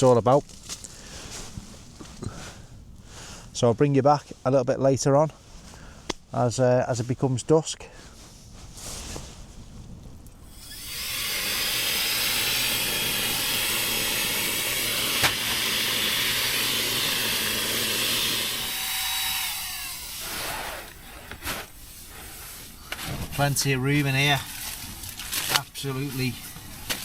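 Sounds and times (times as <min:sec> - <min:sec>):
electric air pump running: 0:10.5 - 0:23.1.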